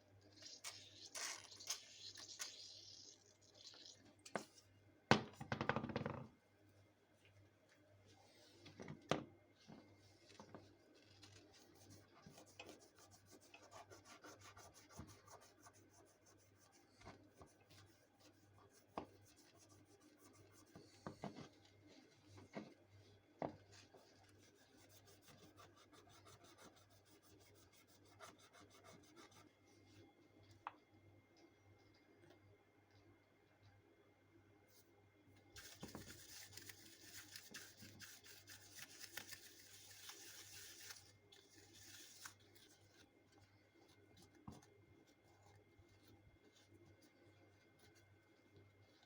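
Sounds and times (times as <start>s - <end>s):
low steady hum: 6.2s - 49.0s
faint rubbing and scrubbing: 9.5s - 30.4s, 35.6s - 49.0s.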